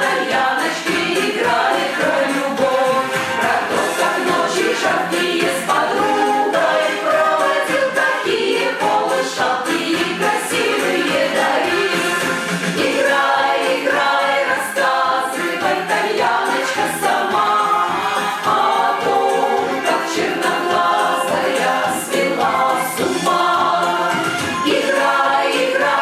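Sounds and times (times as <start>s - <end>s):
vocal ensemble singing in harmony: 0.0s - 26.0s.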